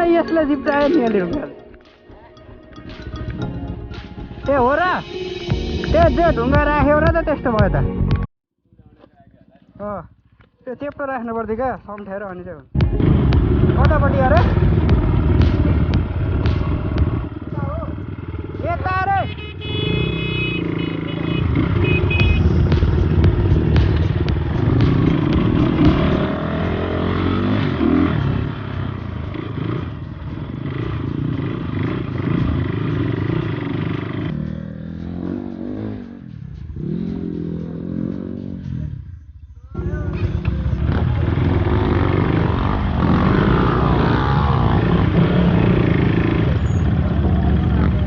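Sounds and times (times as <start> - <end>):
motorcycle engine revving: 12.8 - 39.2, 39.8 - 48.0.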